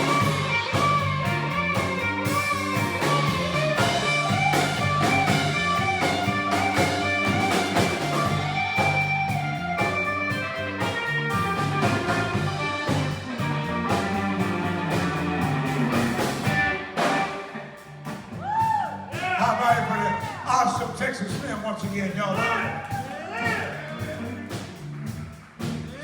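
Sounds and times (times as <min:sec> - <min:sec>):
electric guitar solo: 0:00.0 - 0:18.0
bass and drums: 0:00.0 - 0:26.0.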